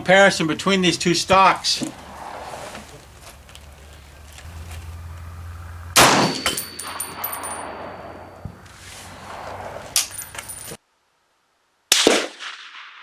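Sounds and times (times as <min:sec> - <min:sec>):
thin high ringing: 0:00.0 - 0:10.8
rifle shot: 0:06.0 - 0:08.2, 0:11.9 - 0:13.0.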